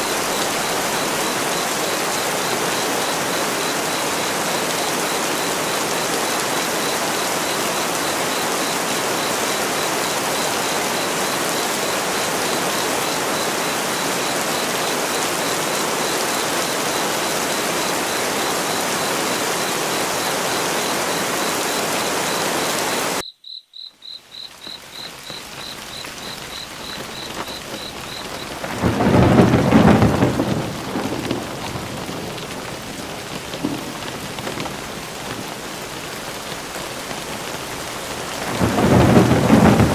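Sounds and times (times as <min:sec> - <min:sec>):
heavy rain: 0:00.0 - 0:23.2, 0:24.0 - 0:39.9
insect chirping: 0:00.0 - 0:30.8
thunder rumble: 0:26.5 - 0:35.5, 0:38.2 - 0:39.9.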